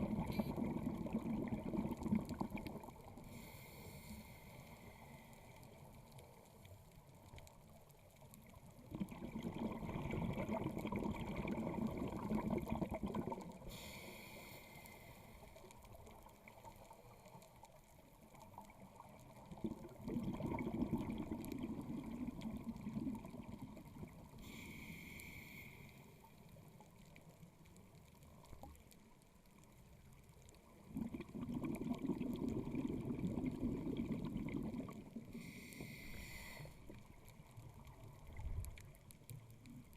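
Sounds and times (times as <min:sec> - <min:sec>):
exhaled bubbles underwater: 0:00.0 - 0:03.3, 0:08.4 - 0:14.0, 0:18.1 - 0:24.6, 0:30.2 - 0:36.0
regulator hiss on inhale: 0:00.2 - 0:00.7, 0:03.2 - 0:06.0, 0:13.6 - 0:15.8, 0:24.3 - 0:26.6, 0:35.3 - 0:37.2.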